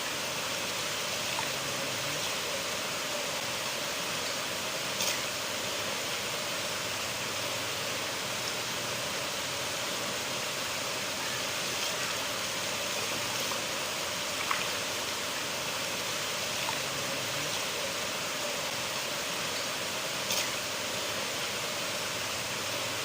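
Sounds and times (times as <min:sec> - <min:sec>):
river water rushing: 0:00.0 - 0:23.0
faint splashes: 0:11.6 - 0:19.0.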